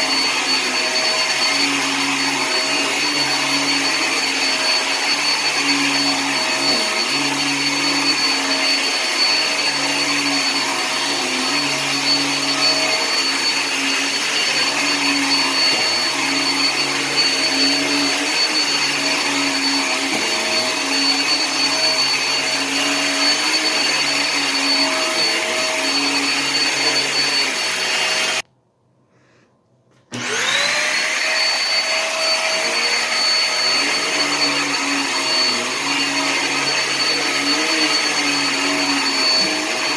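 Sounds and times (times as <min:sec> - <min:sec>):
upright vacuum running over carpet: 0:00.0 - 0:28.4, 0:30.1 - 0:39.9.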